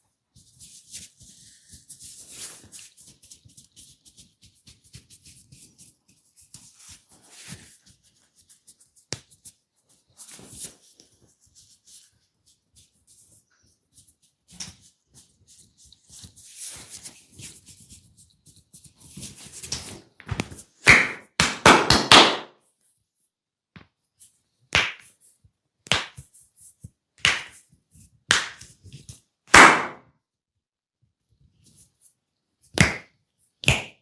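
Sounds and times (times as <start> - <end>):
massage slaps: 19.6 - 22.6, 24.7 - 25.1, 25.8 - 26.3, 27.2 - 27.6, 28.3 - 28.7, 29.5 - 30.1, 32.8 - 34.0.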